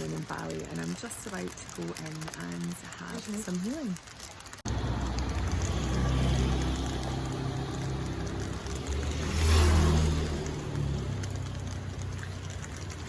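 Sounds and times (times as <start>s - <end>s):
vehicle engine running: 4.7s - 13.0s.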